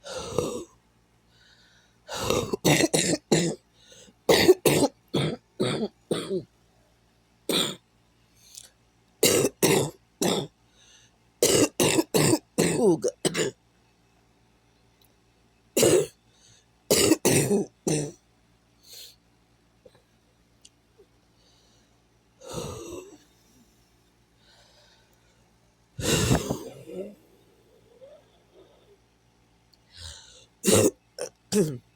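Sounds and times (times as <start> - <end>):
person coughing: 2.2 - 3.6, 4.3 - 6.5, 9.2 - 10.5, 11.4 - 13.6, 15.8 - 16.2, 16.9 - 18.2, 22.5 - 23.2, 26.0 - 27.3, 30.6 - 31.8.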